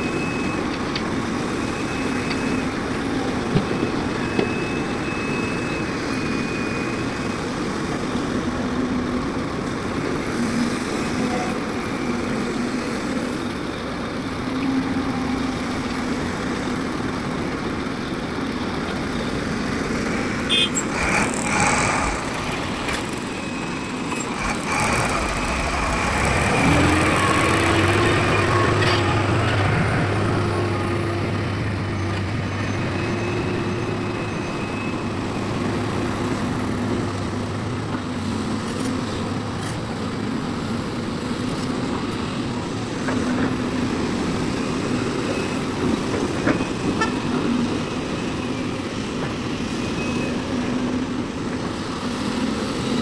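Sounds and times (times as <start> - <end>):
vehicle engines running: 5.9 - 53.0
engine hum rising in pitch: 19.7 - 35.3.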